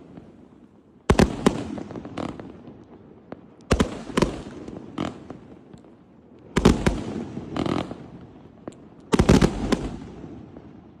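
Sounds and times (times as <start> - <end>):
firework bangs: 0.0 - 11.0.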